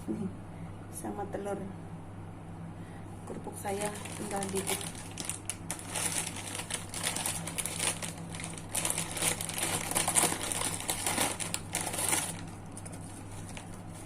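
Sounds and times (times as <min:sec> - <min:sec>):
plastic bag crinkling: 0:03.7 - 0:14.0.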